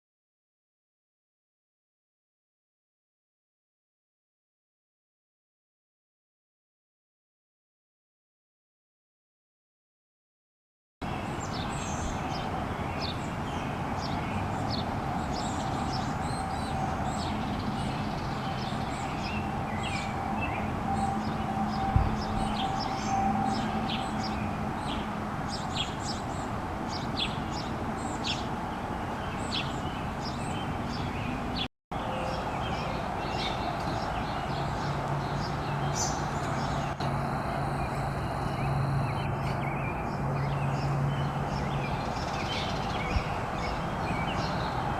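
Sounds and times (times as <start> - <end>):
songbirds chirping: 11.0 - 44.9
steady low hum: 36.9 - 39.8.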